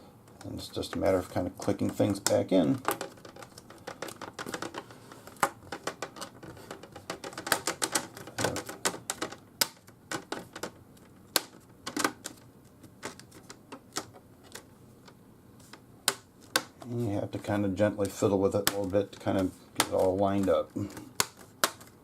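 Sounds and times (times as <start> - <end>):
plastic clips snapping into place: 19.8 - 22.0.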